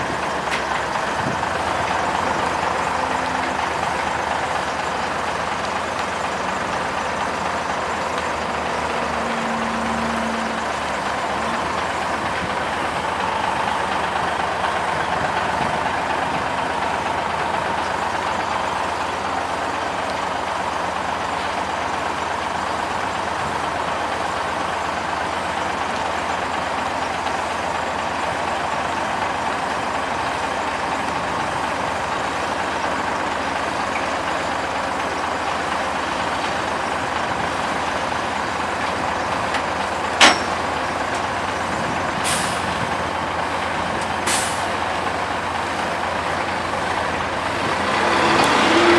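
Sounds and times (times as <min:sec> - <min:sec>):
heavy diesel machinery running: 0:00.0 - 0:48.9
brief low tone: 0:08.8 - 0:16.6.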